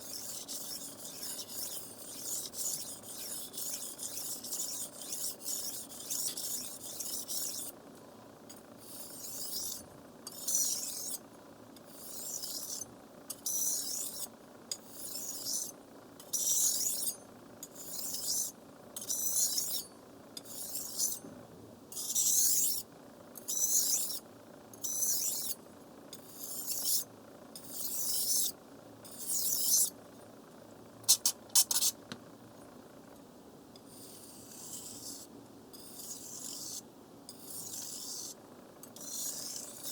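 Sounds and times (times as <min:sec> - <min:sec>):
knife on whetstone strokes: 0:00.0 - 0:07.7, 0:08.8 - 0:11.2, 0:24.8 - 0:25.6, 0:31.1 - 0:32.0, 0:33.9 - 0:38.4, 0:39.0 - 0:39.9.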